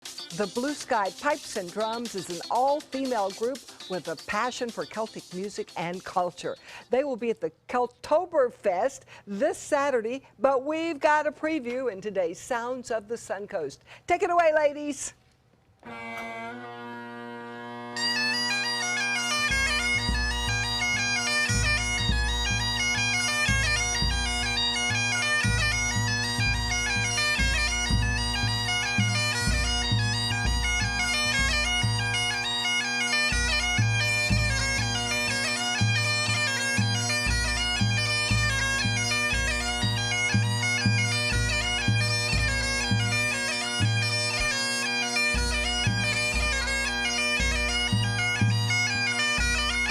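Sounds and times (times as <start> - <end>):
bagpipe chanter melody: 15.8 - 49.9
bagpipe drones: 15.8 - 49.9
low drum beats: 19.4 - 48.8.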